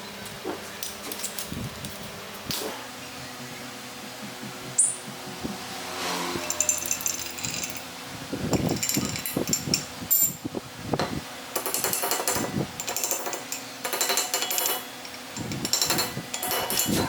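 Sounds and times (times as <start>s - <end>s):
metal tools clinking: 1.0s - 2.2s, 6.4s - 7.9s, 8.5s - 10.4s, 11.6s - 17.0s
metallic rattling clicks: 6.4s - 7.9s, 8.5s - 10.4s, 11.6s - 17.0s.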